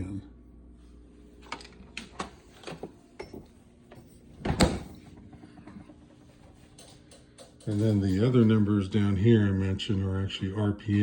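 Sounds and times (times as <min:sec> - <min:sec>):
refrigerator door closing: 0:04.4 - 0:05.2.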